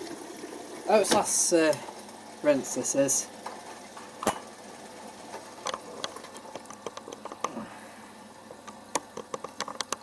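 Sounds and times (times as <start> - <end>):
water sloshing in washing machine: 0.0 - 7.8.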